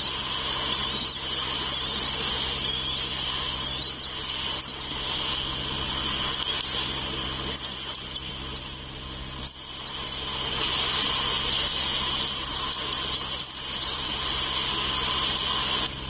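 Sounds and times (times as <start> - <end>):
insects chorus: 0.0 - 16.0
low steady hum: 0.0 - 16.0.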